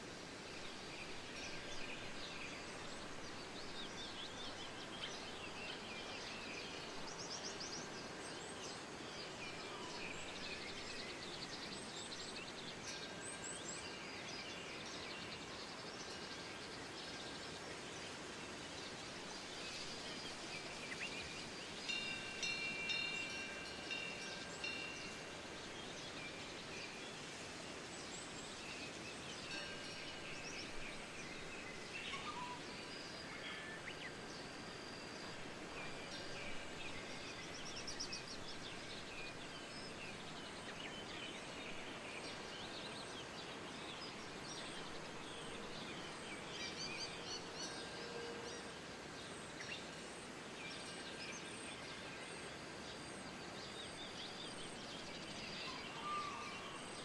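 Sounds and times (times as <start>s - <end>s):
soft wind: 0.0s - 57.0s
faint drawn-out ringing tones: 19.3s - 42.5s, 44.2s - 50.3s.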